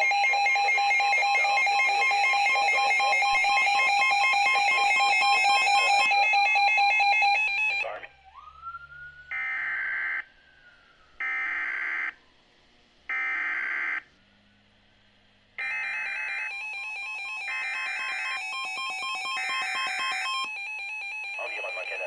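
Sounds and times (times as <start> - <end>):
continuous electronic alert tone: 0.0 - 8.1, 15.7 - 22.0
screeching digital data tones: 0.2 - 7.9.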